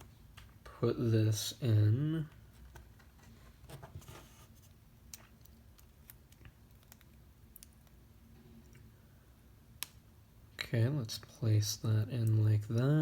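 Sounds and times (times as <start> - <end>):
low room hum: 0.0 - 13.0
small parts clicking and tapping: 5.1 - 8.0.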